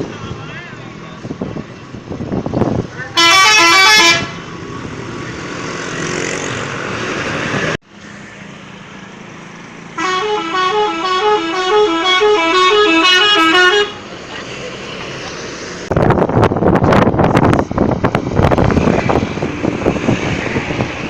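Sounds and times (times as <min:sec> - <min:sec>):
road and traffic noise: 0:00.0 - 0:21.0
multi-tone musical bus horn: 0:03.1 - 0:04.4, 0:10.0 - 0:14.0.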